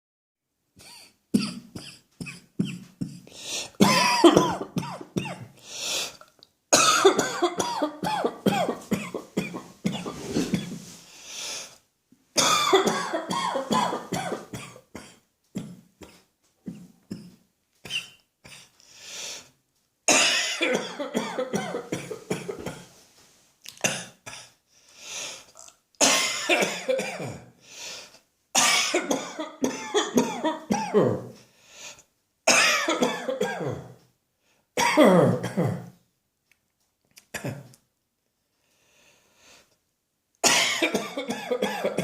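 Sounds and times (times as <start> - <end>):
person coughing: 0.8 - 5.6, 6.8 - 10.9, 12.4 - 18.7, 20.1 - 22.9, 26.0 - 27.6, 28.6 - 31.3, 32.5 - 34.0, 34.8 - 36.0, 37.3 - 37.8, 40.4 - 42.0
person breathing: 3.2 - 3.8, 5.6 - 6.2, 9.9 - 11.8, 18.5 - 19.6, 24.7 - 25.6, 27.6 - 28.3, 31.4 - 32.1, 38.6 - 39.8.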